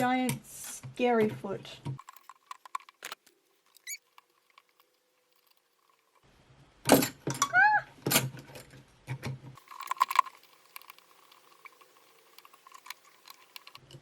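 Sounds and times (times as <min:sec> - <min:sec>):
metal clicks and rattles: 0:02.0 - 0:06.2, 0:06.9 - 0:14.0
short squeak: 0:03.8 - 0:04.0.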